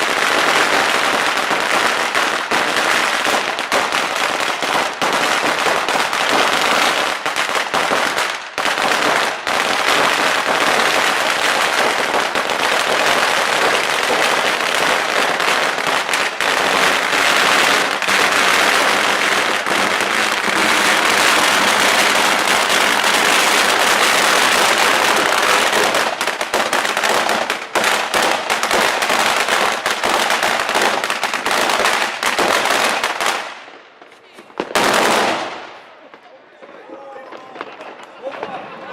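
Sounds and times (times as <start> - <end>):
firecracker string crackling: 0.0 - 38.9.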